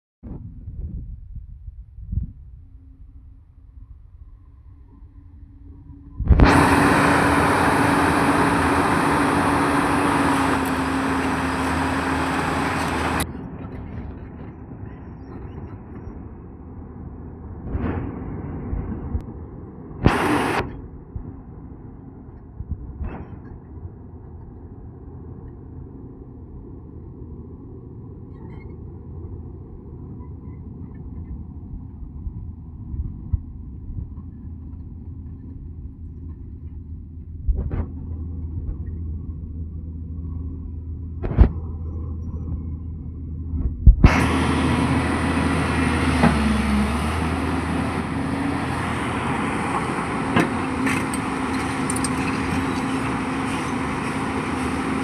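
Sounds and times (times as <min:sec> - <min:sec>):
excavator diesel engine rumbling: 0:06.4 - 0:13.3, 0:20.1 - 0:20.6, 0:44.1 - 0:55.0
hiss: 0:20.1 - 0:20.6.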